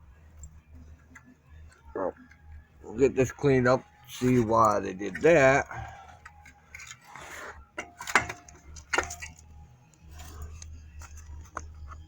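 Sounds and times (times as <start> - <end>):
light scraping and rustling: 4.0 - 9.5.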